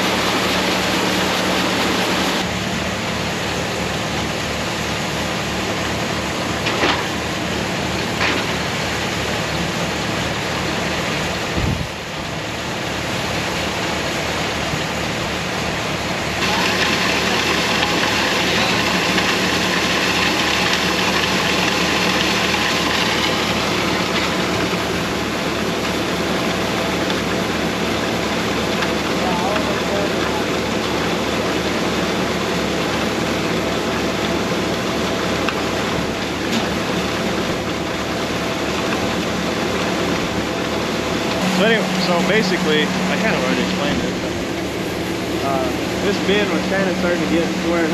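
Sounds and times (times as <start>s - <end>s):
hissing rush: 0.0s - 2.5s, 41.4s - 47.9s
grinder-mixer and augers running: 0.0s - 47.9s.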